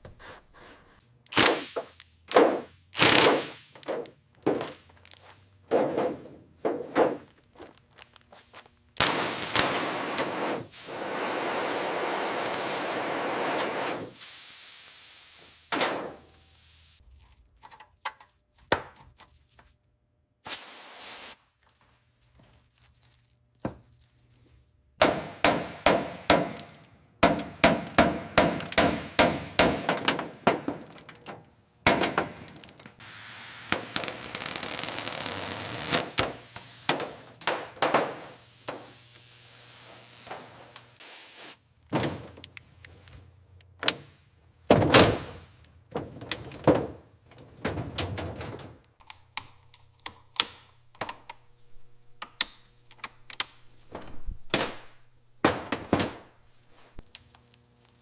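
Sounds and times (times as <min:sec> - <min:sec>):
knocks and clanks: 0:01.4 - 0:07.8, 0:25.0 - 0:33.0, 0:36.0 - 0:39.0, 0:53.8 - 0:57.1
repeated impact strikes: 0:25.0 - 0:32.9.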